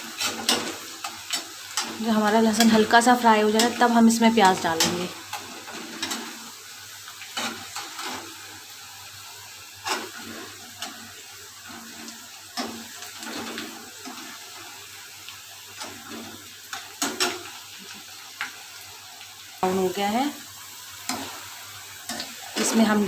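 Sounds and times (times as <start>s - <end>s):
spatula scraping a pan: 0.0s - 2.9s, 4.5s - 6.5s, 7.2s - 8.5s, 9.8s - 14.6s
garlic sizzling in hot oil: 0.0s - 23.0s.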